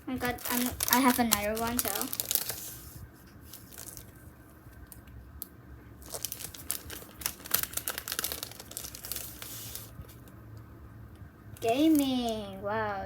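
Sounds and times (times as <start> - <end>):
packaging crinkling: 0.2 - 5.1, 6.0 - 10.3, 11.6 - 12.3.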